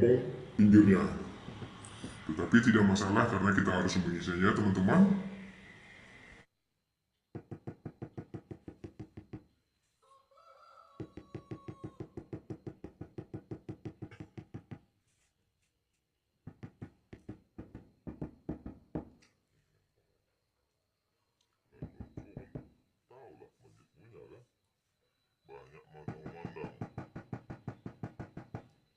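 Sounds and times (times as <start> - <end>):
rapid tapping on hollow floor tiles: 7.3 - 9.5, 11.0 - 14.9, 16.4 - 19.2, 21.8 - 22.8, 26.1 - 28.9.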